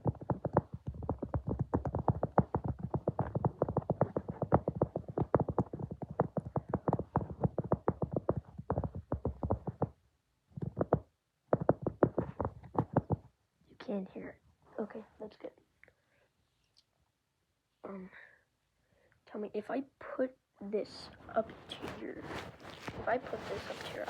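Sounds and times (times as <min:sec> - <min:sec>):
rapid even tapping: 0:00.0 - 0:10.0, 0:10.6 - 0:13.3.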